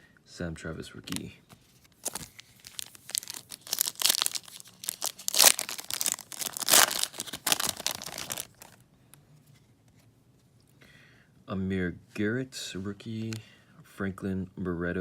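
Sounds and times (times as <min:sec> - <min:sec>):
wrapper tearing and crinkling: 0:01.9 - 0:08.8.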